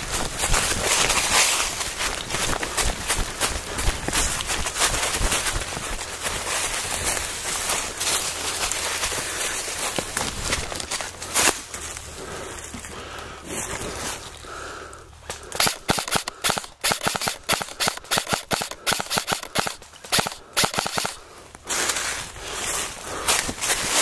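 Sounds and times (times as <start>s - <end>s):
airsoft rifle shots: 15.6s - 21.2s.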